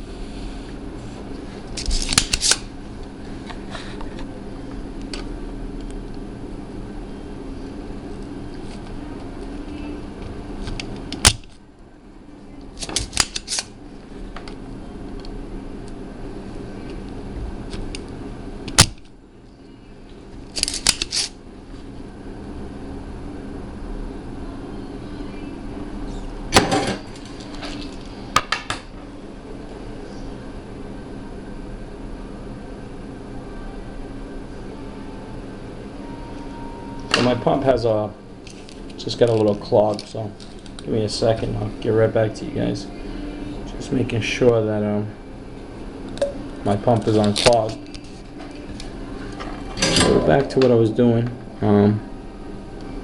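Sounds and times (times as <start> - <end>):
steady low hum: 0.0 - 53.0
desoldering pump snapping: 1.7 - 2.7, 10.6 - 11.6, 12.6 - 13.7, 17.7 - 19.1, 20.5 - 21.3, 46.1 - 50.8.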